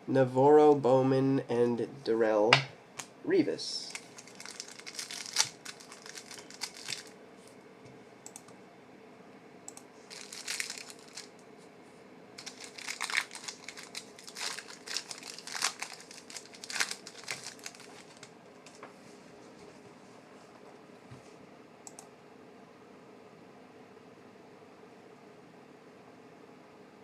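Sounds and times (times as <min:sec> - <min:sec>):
card wrappers crinkling: 0:03.8 - 0:07.2, 0:10.1 - 0:11.4, 0:12.4 - 0:18.8.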